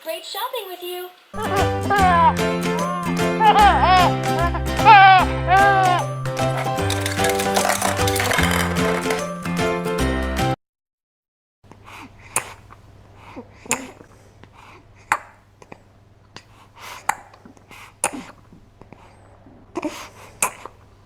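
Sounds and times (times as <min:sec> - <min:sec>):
plastic toys clicking and knocking: 0:06.4 - 0:09.4.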